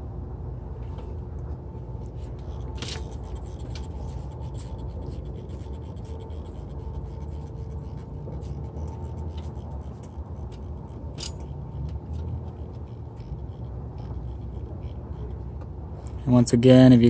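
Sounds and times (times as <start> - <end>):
steady low hum: 0.0 - 17.0
hands scratching and clicking: 2.1 - 15.7.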